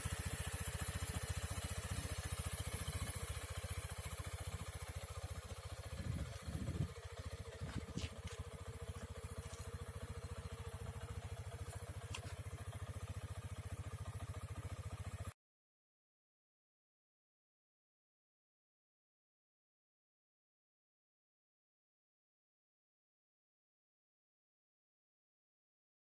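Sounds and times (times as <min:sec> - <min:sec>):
motorcycle engine idling: 0:00.0 - 0:15.4.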